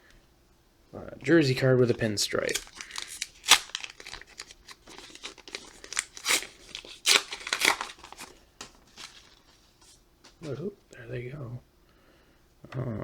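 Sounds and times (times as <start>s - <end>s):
wrapper ripping and crinkling: 2.2s - 9.5s.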